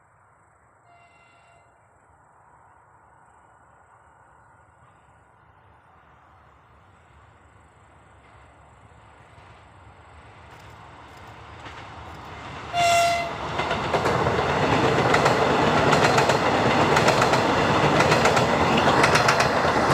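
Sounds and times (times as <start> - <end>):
train horn blast: 0.8 - 1.8, 12.7 - 13.4
diesel train rumble: 3.2 - 19.9
wheels clacking over rail joints: 10.5 - 19.9.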